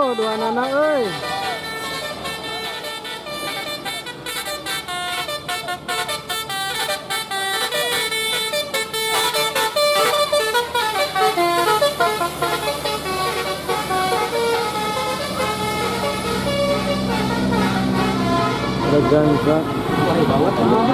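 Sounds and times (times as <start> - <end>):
musical air horn melody: 0.0 - 20.9.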